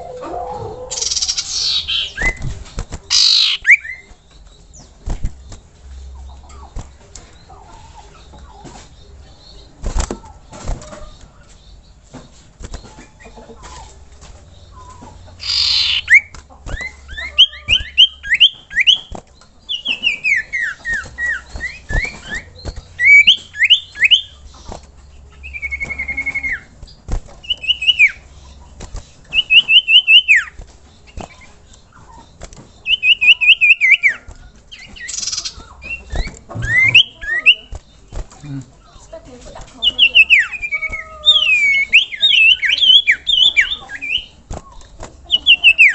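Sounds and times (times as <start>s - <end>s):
bird whistled calls: 0.0s - 4.1s, 14.8s - 24.5s, 25.4s - 26.8s, 27.4s - 28.4s, 29.3s - 37.8s, 39.8s - 45.9s
bird rasping burst: 3.1s - 3.8s.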